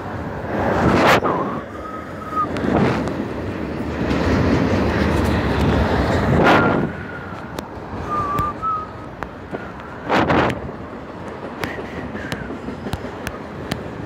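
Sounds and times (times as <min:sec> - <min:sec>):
train wheels rumbling on rails: 0:00.0 - 0:14.0
thin high whistle-like tone: 0:01.3 - 0:02.6, 0:08.0 - 0:09.0.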